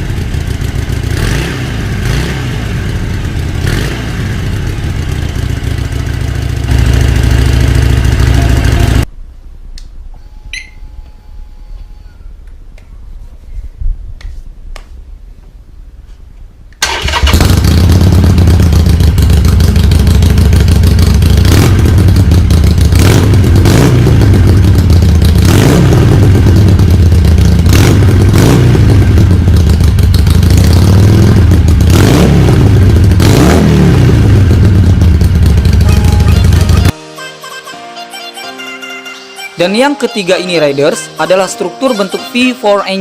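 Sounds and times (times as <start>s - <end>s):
motorcycle engine revving: 0.0s - 9.1s, 16.8s - 36.9s.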